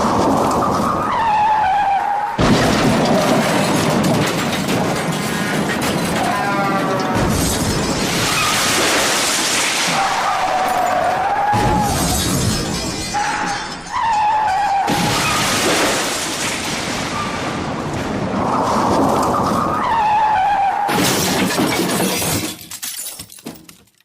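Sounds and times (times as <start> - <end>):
car crash with breaking glass: 2.4 - 6.4, 7.2 - 18.2, 20.8 - 23.8
falling debris tinkling: 2.4 - 17.7, 20.9 - 24.0.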